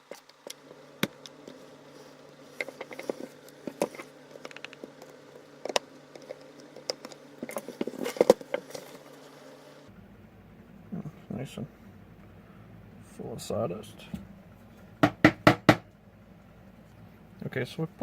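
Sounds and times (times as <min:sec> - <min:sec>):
faint low hum: 0:00.0 - 0:18.0.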